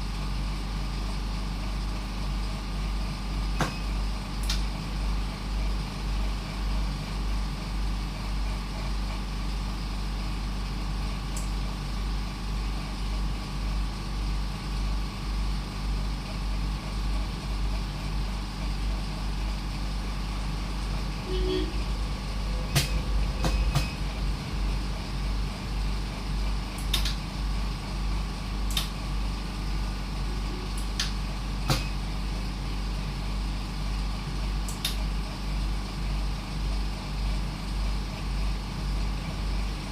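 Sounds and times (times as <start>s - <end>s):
vehicle engine rumble: 17.1s - 31.0s.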